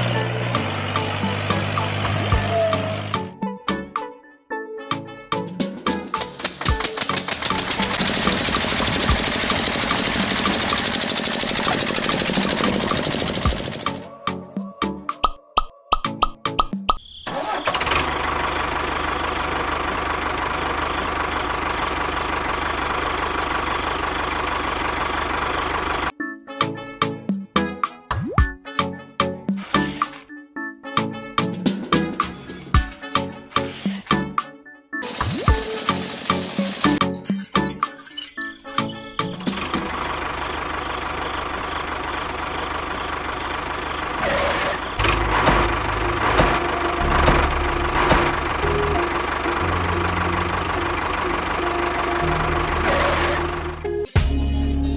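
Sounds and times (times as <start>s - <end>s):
small engine running: 6.1s - 14.2s, 17.3s - 26.1s, 38.6s - 54.0s.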